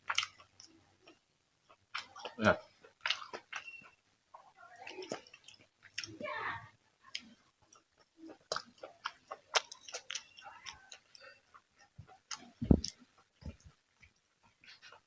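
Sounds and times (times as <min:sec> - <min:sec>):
person chewing and crunching food: 0:00.0 - 0:06.2, 0:07.0 - 0:15.0
wet mouth clicks and smacks: 0:07.2 - 0:11.2.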